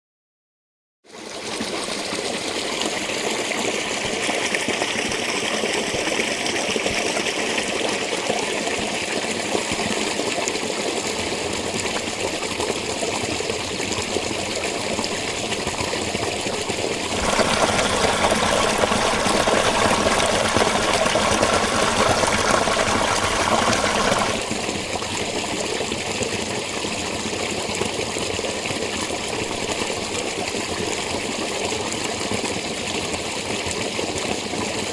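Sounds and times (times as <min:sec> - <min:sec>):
spring water running: 0:11.6 - 0:26.3.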